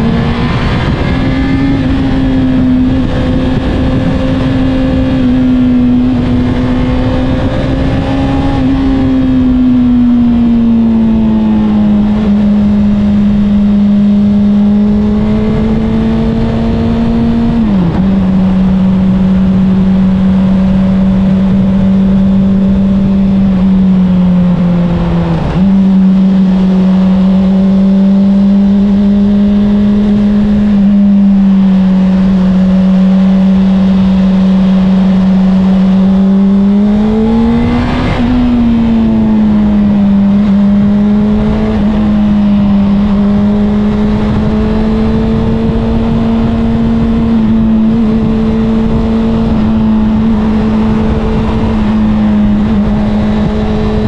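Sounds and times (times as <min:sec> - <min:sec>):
motorcycle engine running: 0:00.0 - 0:54.0
wind rush on microphone: 0:00.0 - 0:54.0.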